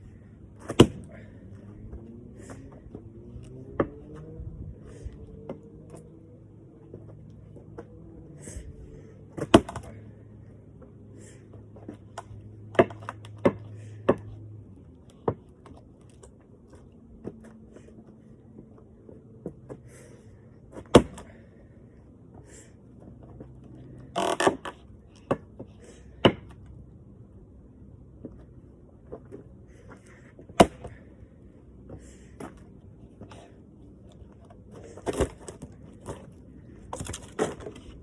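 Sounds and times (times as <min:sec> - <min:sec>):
axe chopping logs: 0:00.6 - 0:01.2, 0:09.3 - 0:10.0, 0:12.2 - 0:14.4, 0:20.7 - 0:21.4, 0:24.2 - 0:26.6, 0:30.4 - 0:31.0, 0:34.8 - 0:38.0.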